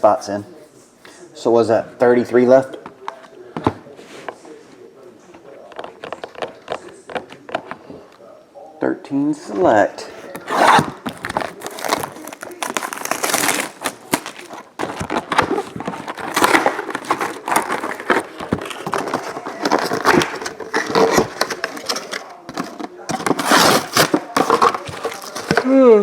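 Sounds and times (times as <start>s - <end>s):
plastic wrappers crinkling: 10.3s - 25.7s
small clicks and tears: 10.8s - 22.3s.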